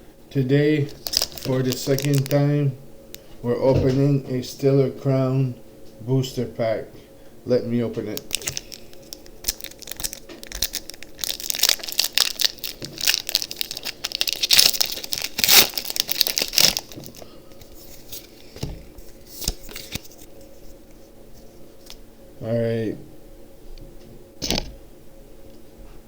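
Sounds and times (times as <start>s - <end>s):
foil wrapper crinkling and tearing: 0.9s - 2.5s, 8.0s - 20.6s.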